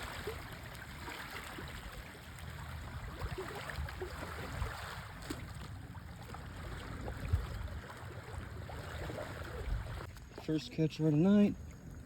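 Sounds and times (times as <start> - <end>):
water lapping and gurgling: 0.0 - 12.0
wind rumble on microphone: 6.5 - 10.1.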